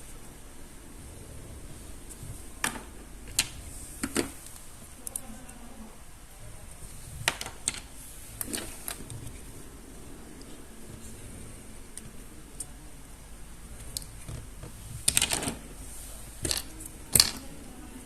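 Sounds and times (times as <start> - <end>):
plastic toy parts clicking and knocking: 7.2 - 9.1, 13.8 - 15.6, 16.4 - 17.5.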